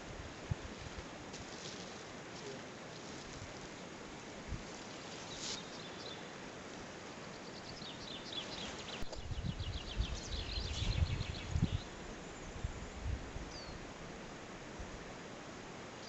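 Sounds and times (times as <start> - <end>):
steady outdoor hiss: 0.0 - 16.0
songbird chirping and trilling: 5.0 - 6.3, 7.2 - 12.6, 13.5 - 13.8.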